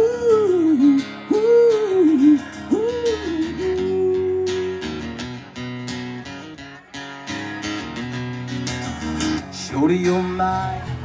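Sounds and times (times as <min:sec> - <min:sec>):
person singing: 0:00.0 - 0:05.4
acoustic guitar strumming: 0:00.0 - 0:11.0.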